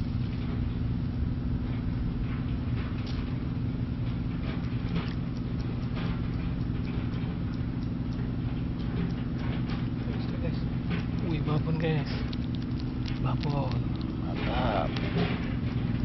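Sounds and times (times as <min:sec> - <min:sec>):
engine running: 0:00.0 - 0:16.0
faint ticks and rustles: 0:04.0 - 0:16.0.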